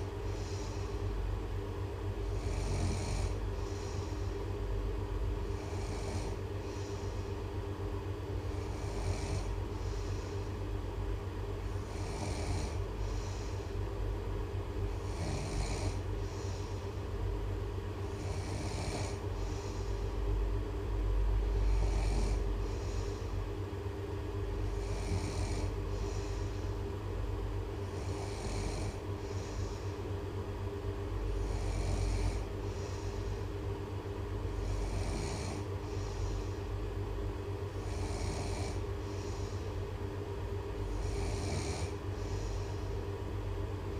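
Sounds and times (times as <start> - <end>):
steady low hum: 0.0 - 43.9
snoring with breath hiss: 2.2 - 4.3, 5.4 - 7.3, 8.4 - 10.4, 11.6 - 13.7, 14.9 - 16.9, 18.0 - 20.0, 21.5 - 23.3, 24.6 - 26.8, 27.8 - 29.8, 31.3 - 33.4, 34.5 - 36.6, 37.7 - 39.6, 40.8 - 42.9.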